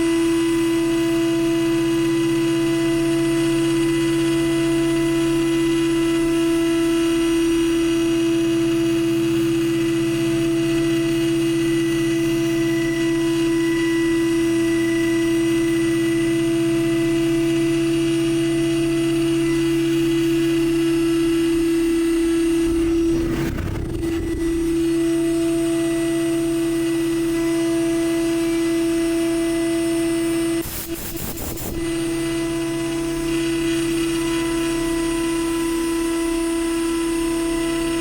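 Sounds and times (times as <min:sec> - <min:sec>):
milling machine running: 0:20.1 - 0:25.1.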